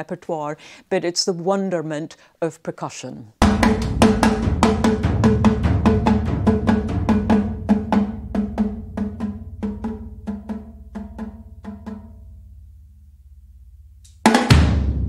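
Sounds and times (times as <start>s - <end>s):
drum pattern: 3.4s - 12.4s, 14.1s - 15.0s.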